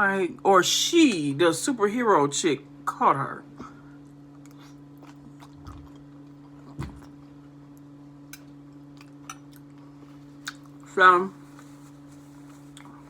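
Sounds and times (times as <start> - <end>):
steady low hum: 0.0 - 13.0
chewing and mouth clicks: 4.0 - 10.8.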